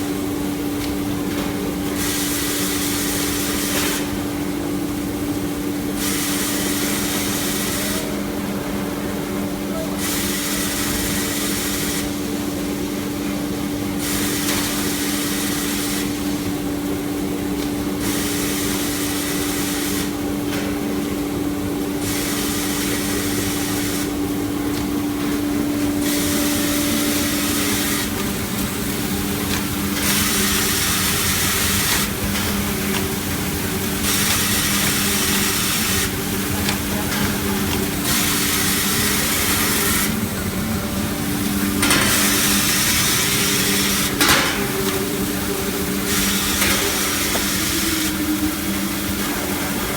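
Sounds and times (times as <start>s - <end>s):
machine hissing: 21.8s - 49.9s
cutting machine motor hum: 22.1s - 49.9s.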